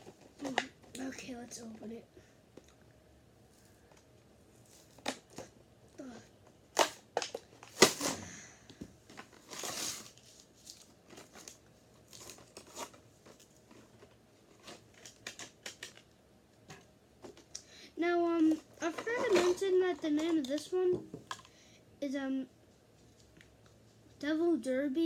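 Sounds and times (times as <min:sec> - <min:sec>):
packaging tearing and crackling: 0:09.4 - 0:16.0.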